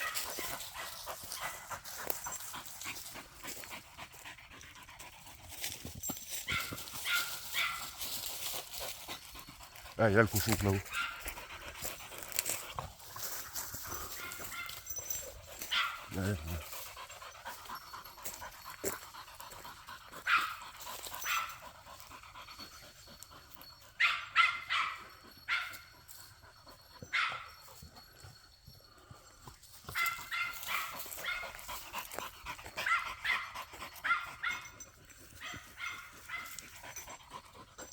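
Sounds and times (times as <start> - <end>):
dog barking in high-pitched yaps: 6.5 - 8.0, 10.9 - 11.2, 14.2 - 15.0, 15.7 - 16.3, 20.2 - 20.6, 21.2 - 21.6, 24.0 - 25.9, 27.1 - 27.6, 29.9 - 31.5, 32.8 - 34.8, 35.4 - 36.6.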